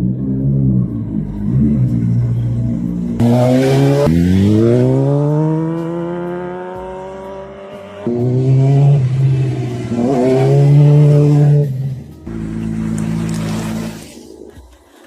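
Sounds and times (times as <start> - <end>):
motorcycle engine revving: 0.0 - 14.4.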